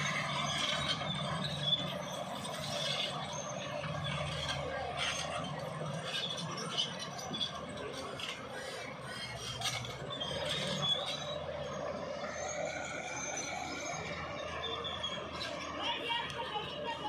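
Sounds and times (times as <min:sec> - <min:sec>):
bulldozer engine running: 0:00.0 - 0:17.0
metallic squealing and scraping: 0:00.0 - 0:17.0.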